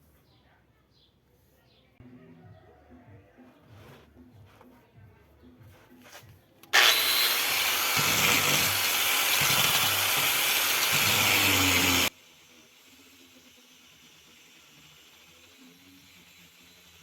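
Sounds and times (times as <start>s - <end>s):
angle grinder cutting: 6.7s - 12.1s, 13.1s - 17.0s.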